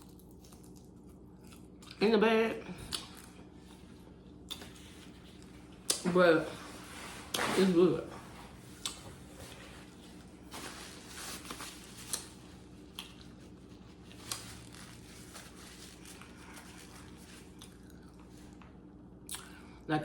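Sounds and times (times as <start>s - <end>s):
eating and food handling: 0.0s - 19.8s
crinkling: 4.5s - 18.7s.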